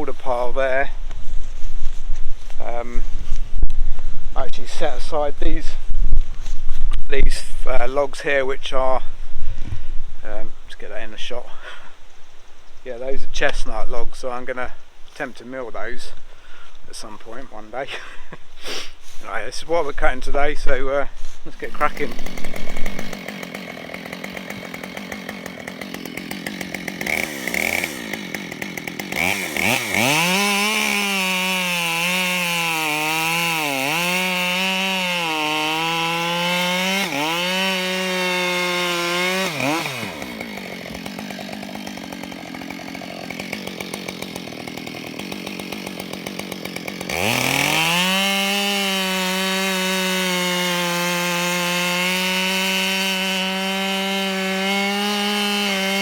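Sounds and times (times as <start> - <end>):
chainsaw cutting through logs: 0.0 - 6.6, 16.9 - 56.0
chainsaw idling and revving: 19.3 - 56.0.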